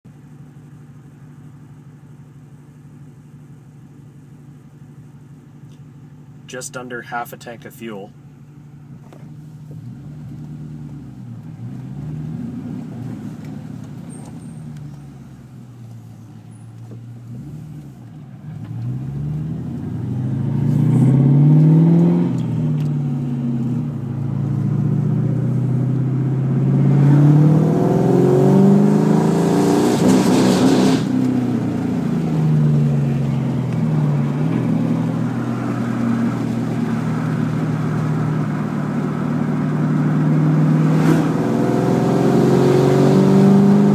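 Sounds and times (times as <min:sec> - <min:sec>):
car engine accelerating: 0:08.8 - 0:43.9.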